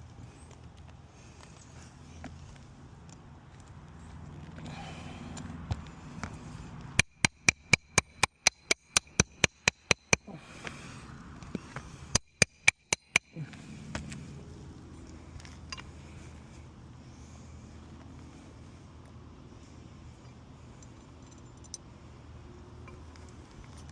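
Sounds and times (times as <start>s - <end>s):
hammer striking metal: 7.0s - 10.4s, 12.1s - 13.6s.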